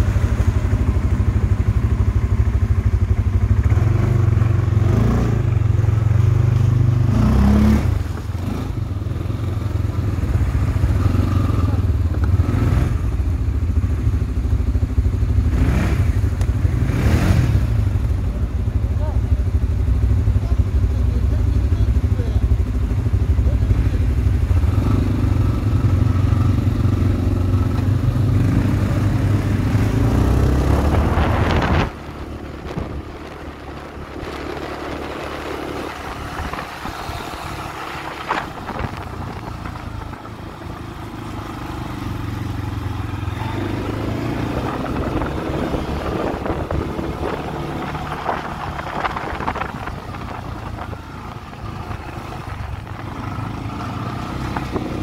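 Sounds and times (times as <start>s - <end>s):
atv engines running: 0.0s - 55.0s.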